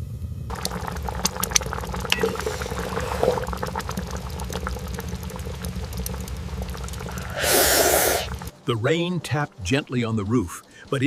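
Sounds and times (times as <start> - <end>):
liquid bubbling at a simmer: 0.5 - 8.6.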